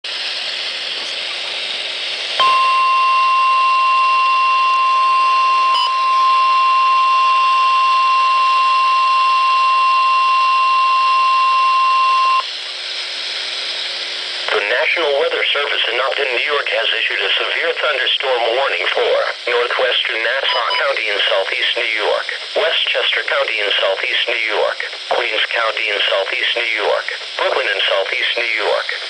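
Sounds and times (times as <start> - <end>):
weather radio alarm tone: 2.4 - 12.5, 19.5 - 28.9
radio hiss: 13.2 - 29.0.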